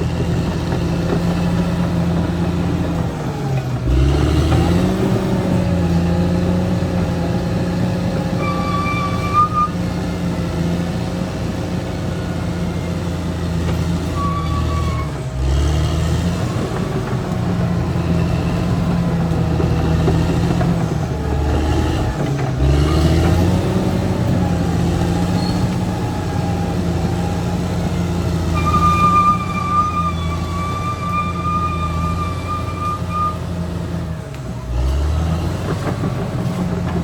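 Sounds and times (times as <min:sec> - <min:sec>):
bulldozer diesel engine running: 0:00.0 - 0:37.0
faint high squeals: 0:08.4 - 0:10.0, 0:14.0 - 0:15.3, 0:25.2 - 0:33.6.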